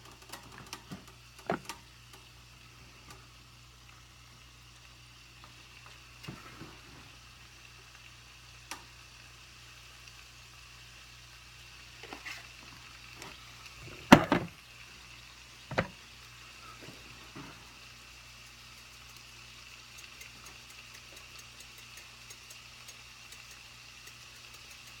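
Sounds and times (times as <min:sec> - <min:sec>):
steady faint hiss: 0:00.0 - 0:24.6
kitchen utensils clattering: 0:13.9 - 0:14.5.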